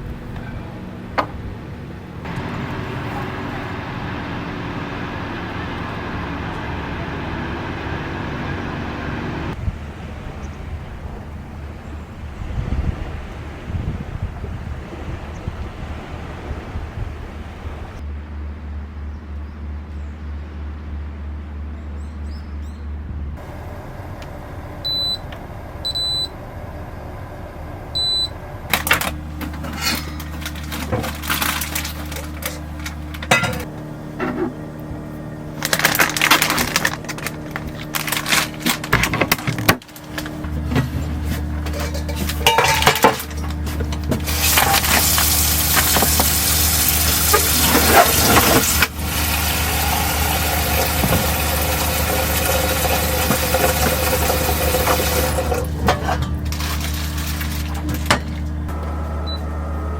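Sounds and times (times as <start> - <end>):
steady low hum: 22.8 - 59.9
short electronic beeps: 24.8 - 25.2, 25.8 - 26.3, 28.0 - 28.4, 59.0 - 59.7
objects clicking and clattering: 28.7 - 34.6, 35.6 - 49.0, 52.5 - 58.6.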